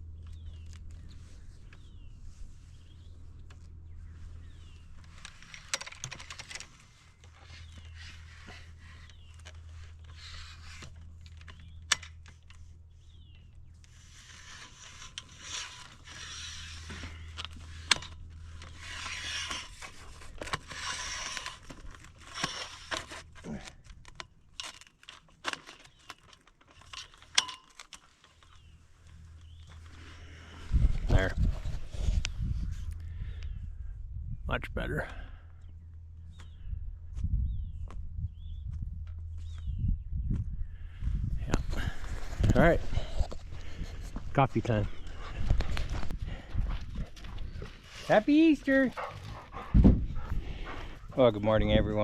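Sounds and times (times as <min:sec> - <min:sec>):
wind rumble on microphone: 0:30.5 - 0:35.1, 0:35.7 - 0:47.9, 0:49.0 - 0:52.0
flag flapping in wind: 0:37.2 - 0:52.0.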